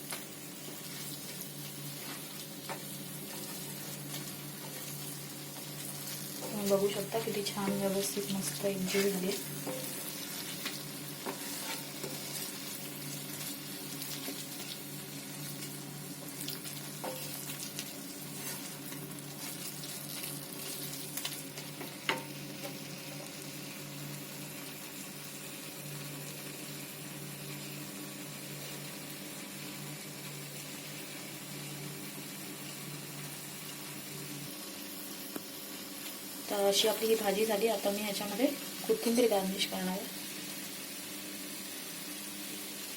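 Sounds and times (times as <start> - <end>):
vegetables sizzling in oil: 0.0 - 42.9
spatula scraping a pan: 8.8 - 12.6, 18.3 - 19.9.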